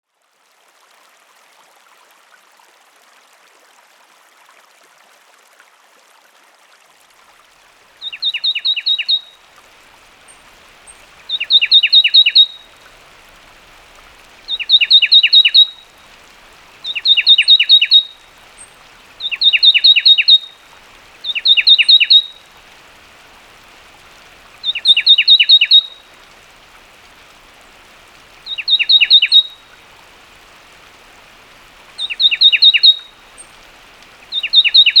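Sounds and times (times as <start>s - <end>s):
faint background hiss: 7.0s - 35.0s
bird singing high notes: 14.5s - 15.8s, 16.9s - 18.2s.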